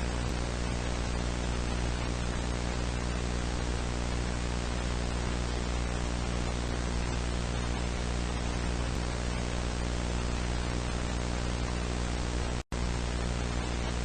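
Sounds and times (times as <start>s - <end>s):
low electrical hum: 0.0s - 14.0s
static hiss: 0.0s - 14.0s.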